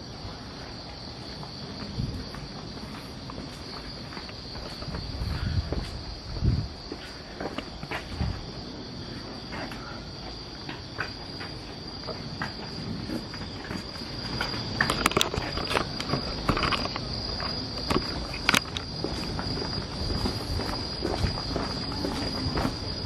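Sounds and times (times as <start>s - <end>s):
crickets chirring: 0.0s - 23.0s
footsteps: 0.2s - 23.0s
scattered clicks: 14.8s - 18.9s.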